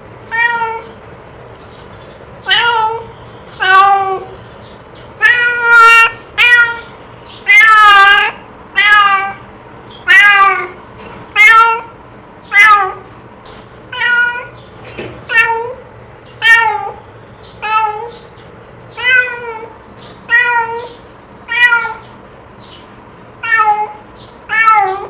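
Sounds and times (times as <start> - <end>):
cat meowing: 0.3 - 1.0, 2.4 - 4.4, 5.2 - 13.1, 13.9 - 14.6, 15.2 - 15.8, 16.4 - 17.0, 17.6 - 18.2, 19.0 - 22.2, 23.4 - 25.0.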